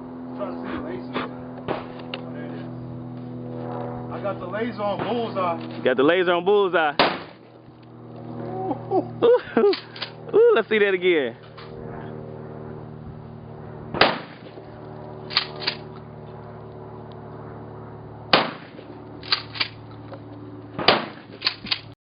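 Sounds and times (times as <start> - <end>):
shotgun shots: 7.0 - 7.4, 13.9 - 14.6, 15.3 - 15.8, 18.3 - 19.8, 20.8 - 21.8
shotgun pump racking clacks: 15.3 - 15.8, 19.2 - 19.8, 21.4 - 21.9.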